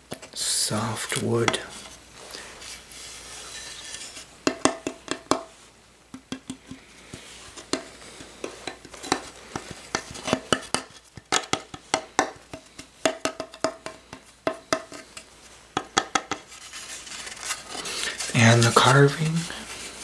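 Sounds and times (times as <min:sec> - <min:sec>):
tapping on wooden mask: 0:04.4 - 0:05.5, 0:06.1 - 0:16.5.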